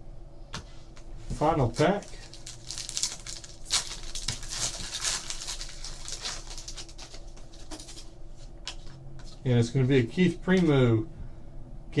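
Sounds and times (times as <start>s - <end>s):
cards being handled: 1.3s - 9.5s
wrapper tearing and crinkling: 1.4s - 8.1s.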